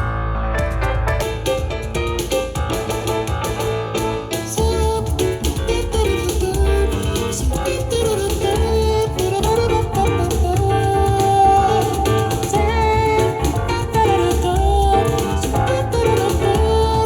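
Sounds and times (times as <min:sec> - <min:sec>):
plucked guitar: 0:00.6 - 0:17.0
person singing: 0:04.5 - 0:17.0.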